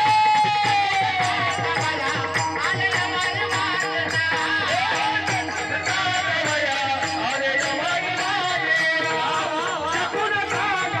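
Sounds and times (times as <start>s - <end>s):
percussion strokes: 0.0s - 11.0s.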